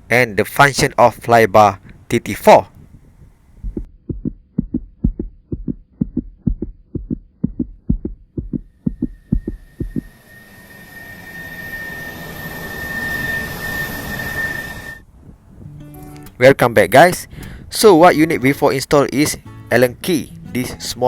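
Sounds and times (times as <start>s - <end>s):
heartbeat thumping: 2.9s - 10.1s
hiss with steady high tone: 9.5s - 15.0s.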